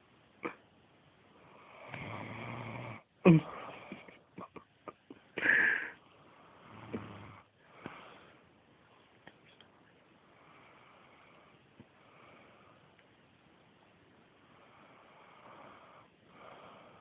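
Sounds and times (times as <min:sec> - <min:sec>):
person snoring: 0:01.6 - 0:04.0, 0:06.6 - 0:07.5.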